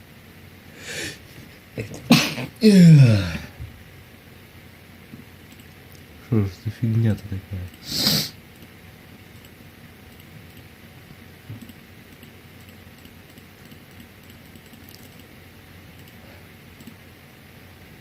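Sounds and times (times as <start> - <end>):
faint clicks: 16.0 - 16.2, 16.8 - 17.0.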